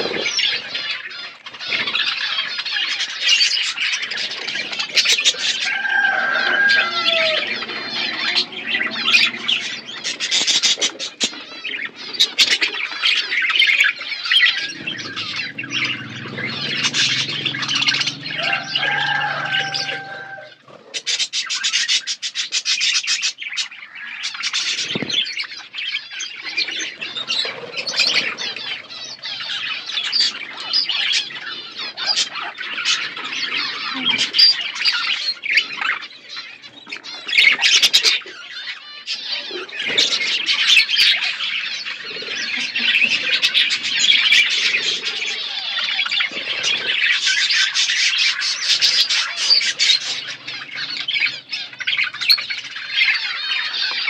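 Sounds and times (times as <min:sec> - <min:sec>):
budgerigars chattering and squawking: 0:00.0 - 0:54.0.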